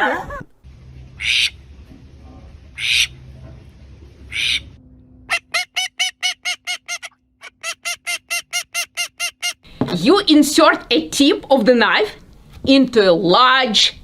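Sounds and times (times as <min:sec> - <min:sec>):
bird honking calls: 0:01.1 - 0:01.7, 0:02.7 - 0:03.3, 0:04.3 - 0:09.6.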